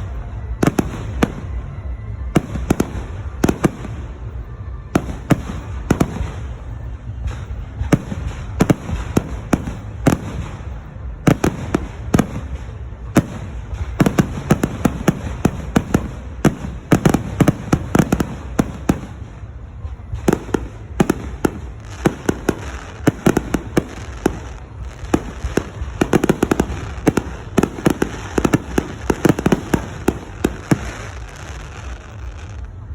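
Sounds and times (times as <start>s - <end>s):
fireworks bursting: 0.0s - 32.9s
steady low rumble: 0.0s - 32.9s.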